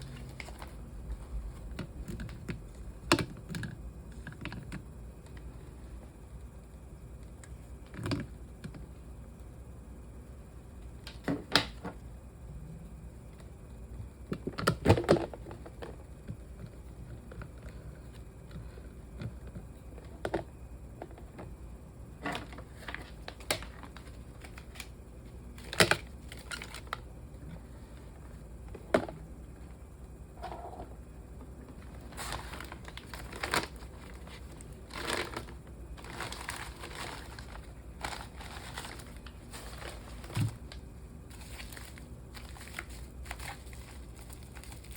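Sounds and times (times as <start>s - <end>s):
crinkling and rustling: 0.0s - 5.4s, 25.6s - 27.1s, 30.4s - 44.9s.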